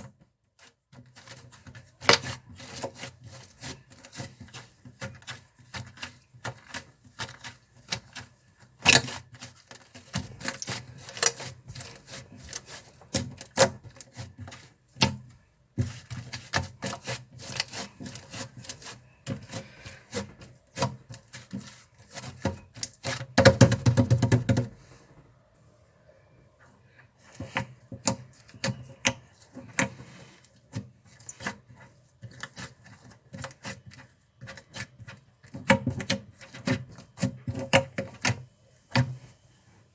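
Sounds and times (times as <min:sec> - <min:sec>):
slime squishing: 0:00.6 - 0:24.8.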